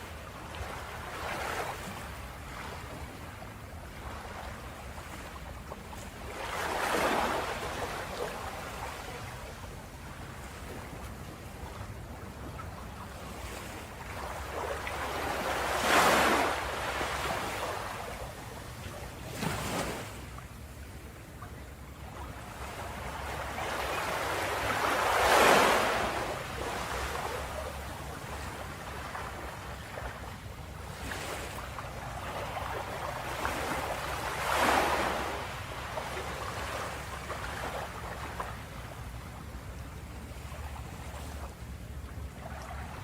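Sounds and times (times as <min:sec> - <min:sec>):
low wash of surf: 0:00.0 - 0:43.0
ocean waves crashing: 0:14.4 - 0:18.3, 0:22.8 - 0:29.4, 0:32.2 - 0:38.2.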